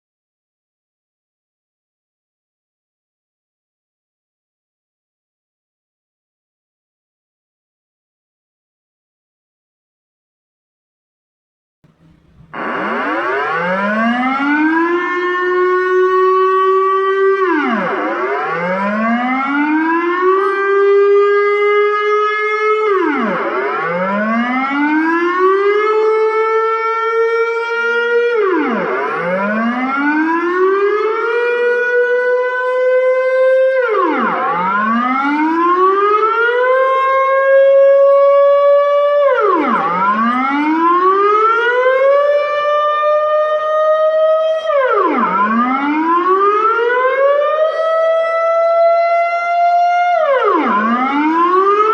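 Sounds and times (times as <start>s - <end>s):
air-raid siren wailing: 11.9s - 51.9s.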